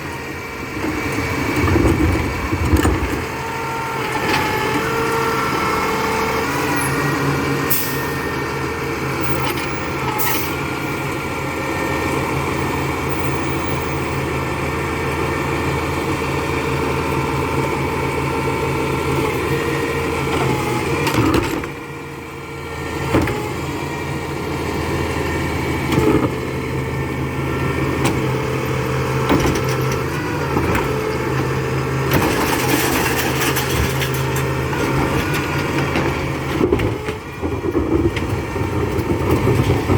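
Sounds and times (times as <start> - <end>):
diesel truck engine running: 0.0 - 39.9.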